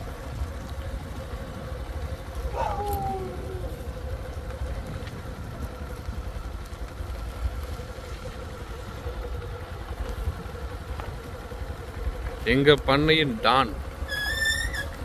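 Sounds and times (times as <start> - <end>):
low rumble: 0.0 - 15.0
motor hum: 0.0 - 15.0.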